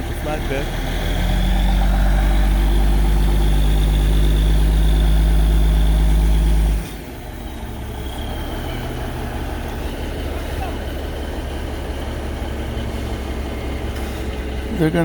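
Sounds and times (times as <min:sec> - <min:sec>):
heavy vehicle engine running: 0:00.0 - 0:15.0.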